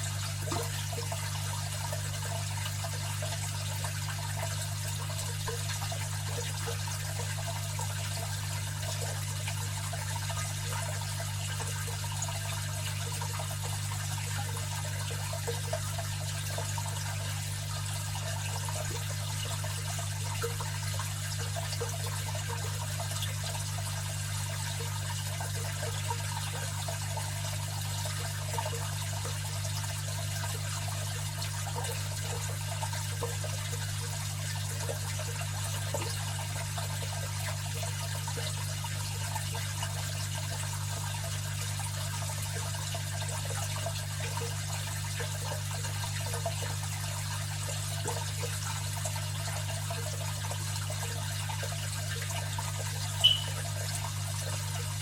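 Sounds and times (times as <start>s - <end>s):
aquarium filter water trickling: 0.0s - 55.0s
low filter hum: 53.2s - 53.7s.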